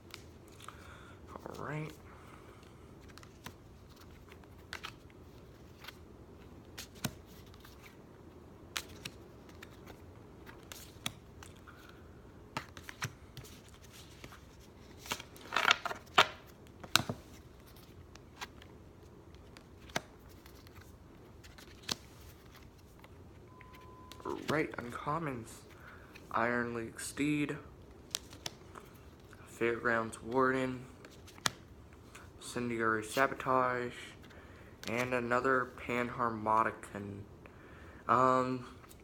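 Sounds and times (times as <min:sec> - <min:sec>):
cards rustling: 0:02.6 - 0:08.0, 0:08.6 - 0:26.4, 0:28.0 - 0:35.8.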